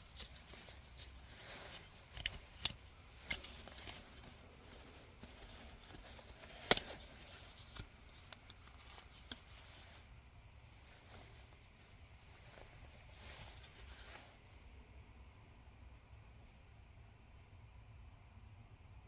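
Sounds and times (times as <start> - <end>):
air filter handling clicks and rustles: 0.0 - 10.0.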